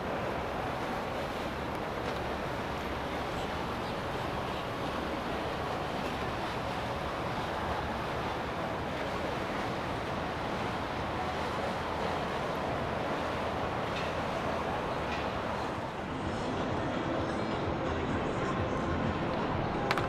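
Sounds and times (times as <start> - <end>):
water noise: 0.0 - 20.0
wind: 0.0 - 20.0.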